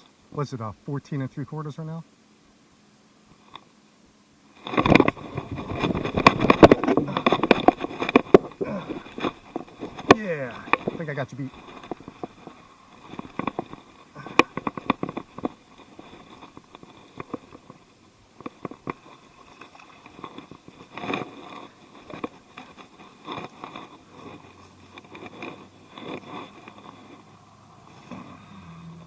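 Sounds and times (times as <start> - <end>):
rustling handling noise: 4.5 - 28.5
handling clicks and taps: 4.6 - 17.8.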